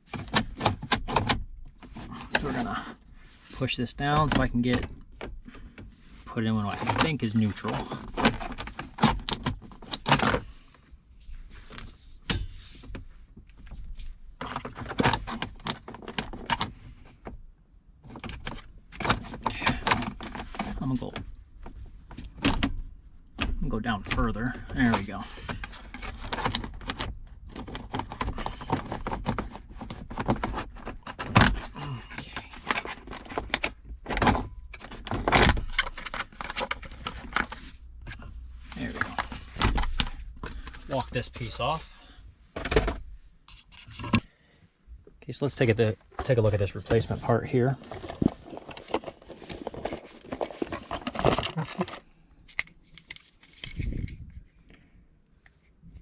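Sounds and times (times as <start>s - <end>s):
clicks and clunks on plastic trim: 0.0s - 2.7s, 6.8s - 10.5s, 18.0s - 38.3s, 42.6s - 44.3s.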